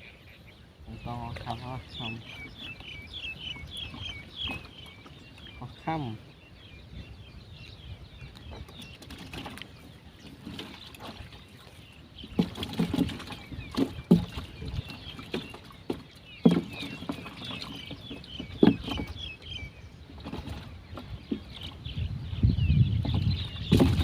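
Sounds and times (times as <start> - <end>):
splashes in water: 9.0 - 19.3.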